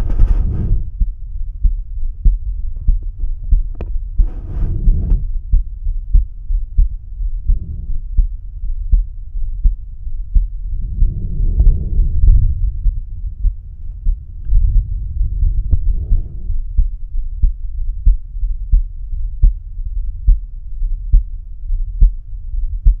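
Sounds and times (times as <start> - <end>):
soft rushing noise: 0.0 - 1.0, 4.2 - 5.6, 6.8 - 18.4
heartbeat through stethoscope: 0.0 - 23.0.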